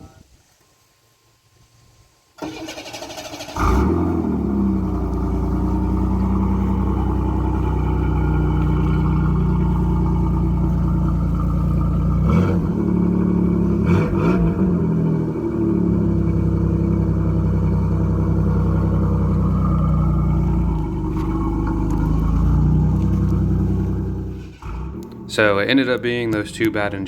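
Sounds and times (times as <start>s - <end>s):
starter motor cranking: 2.4s - 5.4s
car engine idling: 2.4s - 27.0s.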